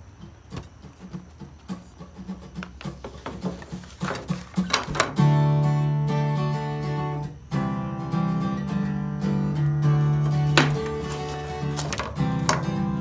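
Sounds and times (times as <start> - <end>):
acoustic guitar chord ringing: 5.2 - 10.6.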